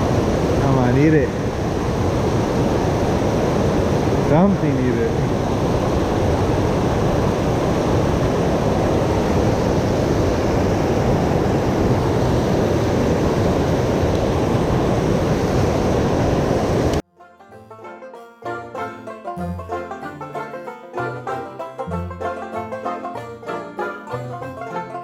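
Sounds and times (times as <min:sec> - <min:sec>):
loud rushing outdoor noise: 0:00.0 - 0:17.0
banjo music: 0:17.1 - 0:25.0.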